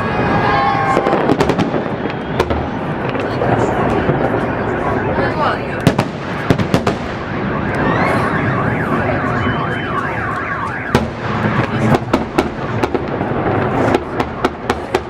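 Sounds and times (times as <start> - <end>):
fireworks bursting with bangs: 0.0 - 15.0
car alarm wailing: 4.5 - 11.2.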